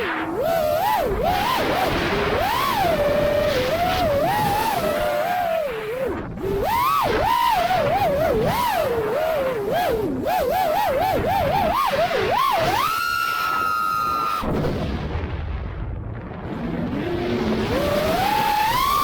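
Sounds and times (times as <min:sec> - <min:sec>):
quadcopter motors whining: 0:00.0 - 0:14.6, 0:16.9 - 0:19.0.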